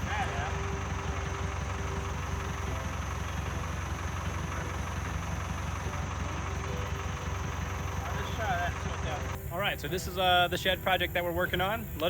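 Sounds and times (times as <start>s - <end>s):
tractor engine idling: 0.0s - 12.0s.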